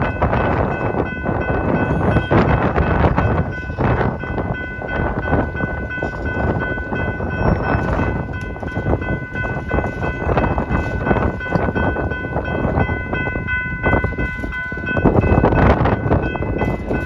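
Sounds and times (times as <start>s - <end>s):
train rumble: 0.0s - 17.0s
wind buffeting microphone: 0.0s - 17.0s.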